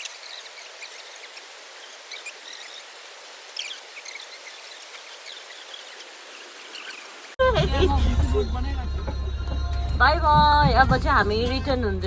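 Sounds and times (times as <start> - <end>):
flowing river water: 0.0 - 7.5.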